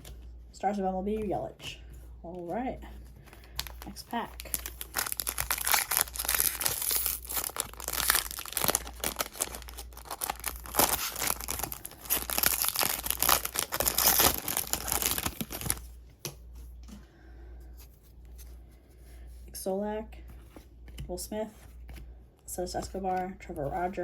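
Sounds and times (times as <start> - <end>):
card pack wrapper tearing and crinkling: 3.5 - 15.8.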